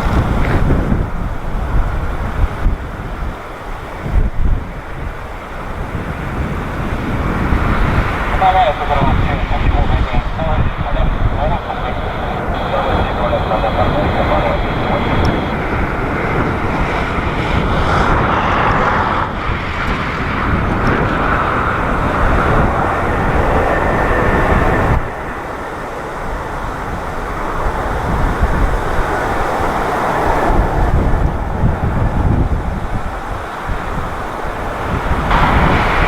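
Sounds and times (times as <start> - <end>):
jet engines running loud: 0.0 - 36.0
wind on microphone: 0.0 - 36.0.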